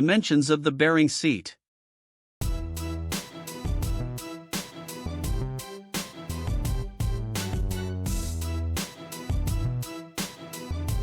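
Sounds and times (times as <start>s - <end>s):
background music with regular beat: 2.4s - 11.0s.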